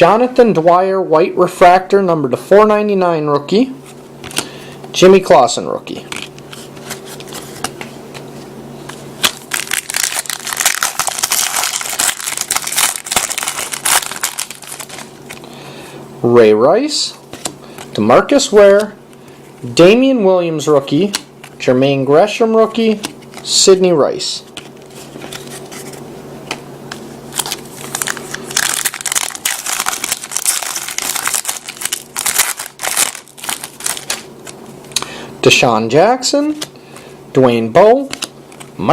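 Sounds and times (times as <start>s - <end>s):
wrapper tearing and crinkling: 9.2s - 15.4s, 27.3s - 34.6s.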